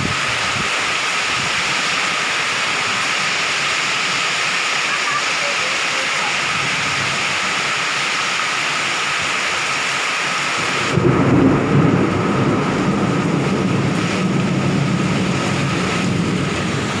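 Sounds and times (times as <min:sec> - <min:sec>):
deep rumbling wind gust: 0:00.0 - 0:01.7, 0:10.6 - 0:17.0
rain hissing: 0:00.0 - 0:17.0.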